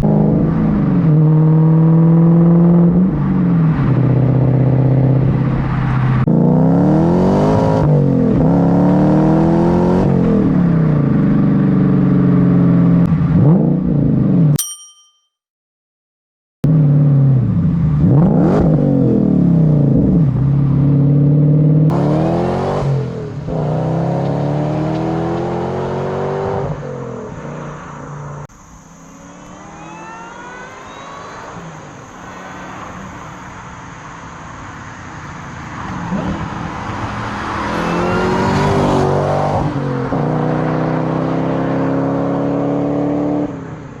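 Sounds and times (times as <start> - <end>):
car engine accelerating hard: 0.0 - 14.5, 16.6 - 44.0.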